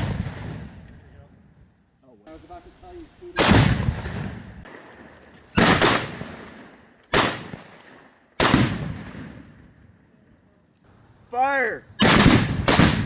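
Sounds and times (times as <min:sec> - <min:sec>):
gunshots with rolling echo: 0:00.0 - 0:00.9, 0:03.4 - 0:09.8, 0:12.0 - 0:13.0.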